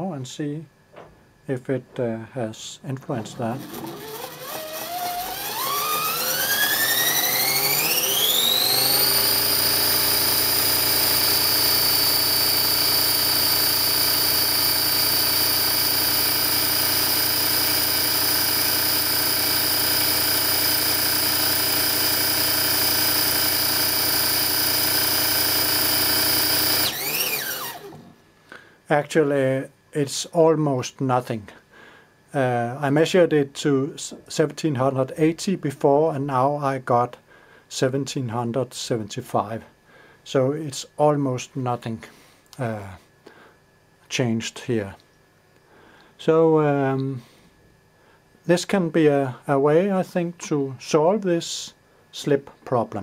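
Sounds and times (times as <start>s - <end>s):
sewing machine motor whining: 3.3s - 28.1s.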